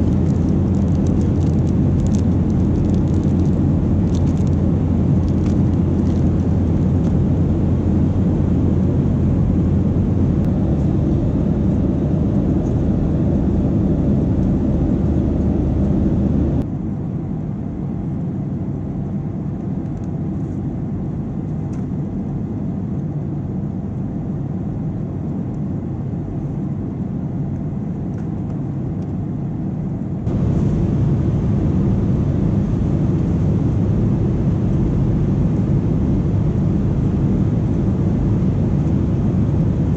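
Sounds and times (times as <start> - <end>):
airplane cabin engine drone: 0.0 - 39.9.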